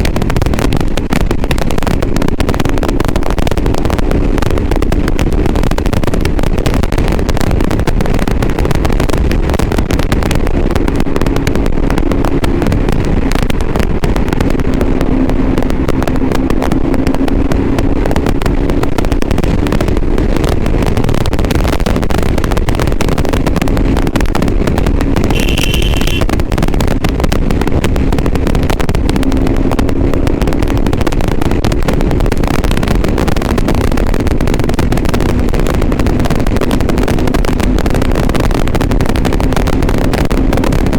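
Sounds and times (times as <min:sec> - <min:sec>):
loud microphone crackle: 0:00.0 - 0:40.9
motorcycle engine running: 0:00.0 - 0:40.9.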